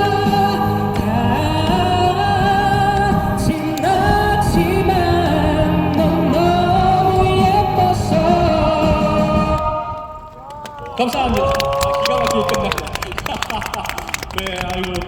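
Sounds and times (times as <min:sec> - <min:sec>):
person singing: 0:00.0 - 0:10.4.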